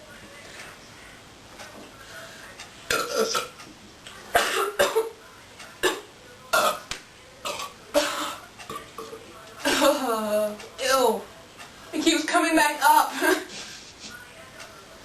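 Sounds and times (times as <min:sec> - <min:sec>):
girl burping: 0:02.9 - 0:03.5, 0:05.8 - 0:08.8.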